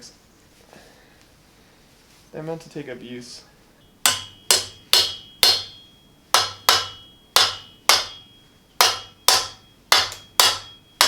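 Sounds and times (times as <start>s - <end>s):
hammer striking metal: 4.0s - 11.0s.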